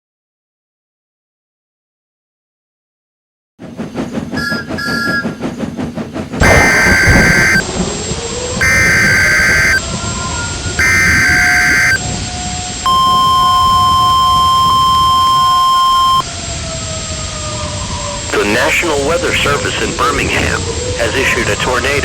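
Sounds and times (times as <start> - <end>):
harsh buzzing data bursts: 6.4 - 7.6, 8.6 - 9.8, 10.8 - 12.0
steady high alert tone: 6.4 - 7.6, 8.6 - 9.8, 10.8 - 12.0, 12.9 - 16.2.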